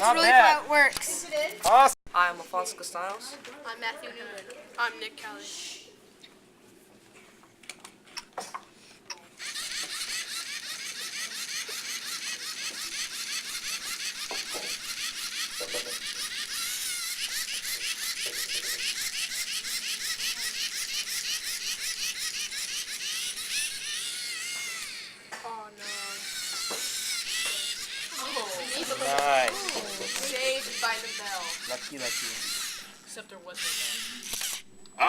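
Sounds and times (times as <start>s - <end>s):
electric motors whining: 9.4s - 35.0s.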